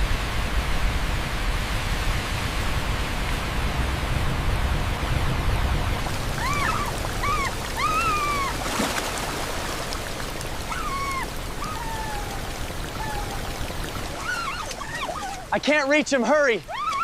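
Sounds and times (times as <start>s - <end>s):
rushing water: 0.0s - 17.0s
puppy whimpering: 6.4s - 8.6s, 10.7s - 13.4s, 14.2s - 15.5s.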